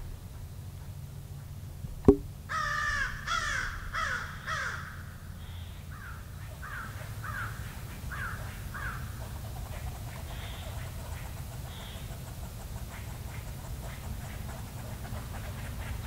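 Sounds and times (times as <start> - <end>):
crows cawing: 2.5 - 9.1.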